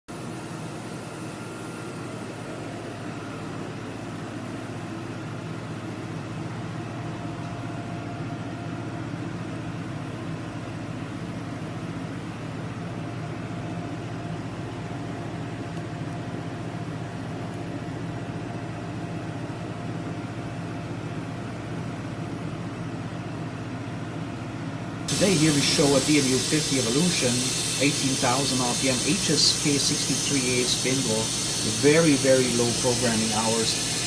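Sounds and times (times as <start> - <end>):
machine mechanical hum: 0.1 - 34.0
faint steady tones: 25.1 - 34.0.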